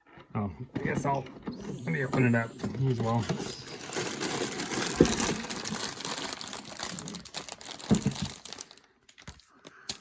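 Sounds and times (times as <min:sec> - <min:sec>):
cardboard packaging crinkling: 0:02.8 - 0:10.0.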